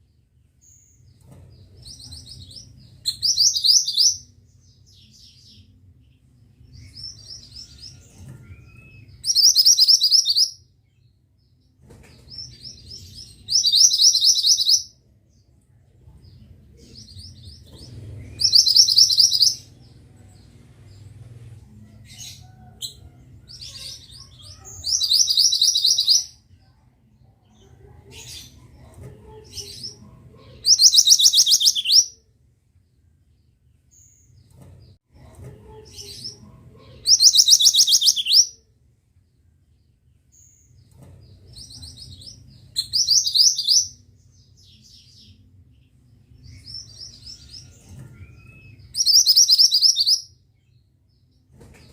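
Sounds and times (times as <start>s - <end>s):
bird singing high-pitched phrases: 1.9s - 5.6s, 6.8s - 11.1s, 12.7s - 15.0s, 18.3s - 19.8s, 22.1s - 26.5s, 29.5s - 32.2s, 35.8s - 38.6s, 41.6s - 45.4s, 48.1s - 50.8s
soft bird chirps: 6.6s - 11.2s, 12.0s - 21.4s, 22.1s - 26.4s, 30.6s - 32.2s, 36.0s - 38.6s, 40.2s - 45.5s, 46.3s - 51.9s.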